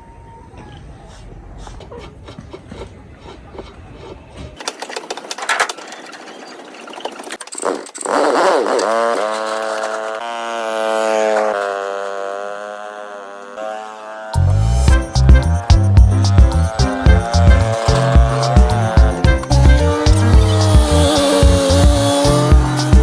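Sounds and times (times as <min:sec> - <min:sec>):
music with held pitched notes: 0:14.4 - 0:23.0.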